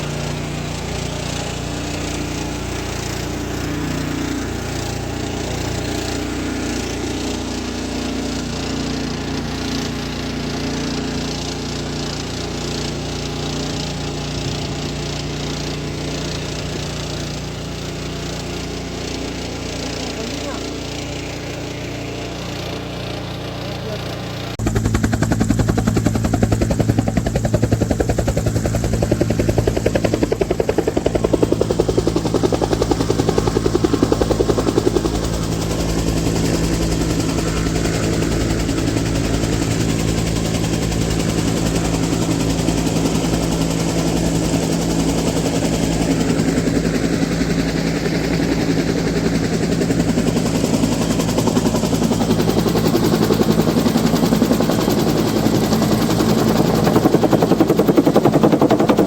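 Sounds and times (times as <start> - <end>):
water pump engine running: 0.0 - 59.0.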